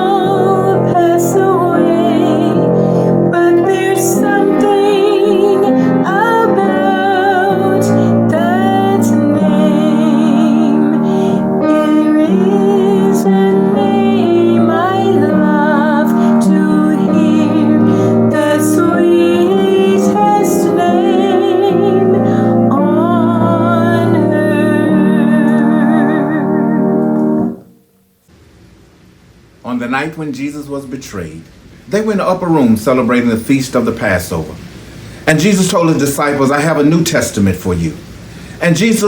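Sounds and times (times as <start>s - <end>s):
woman singing a hymn: 0.0s - 27.6s
piano accompaniment: 0.0s - 28.2s.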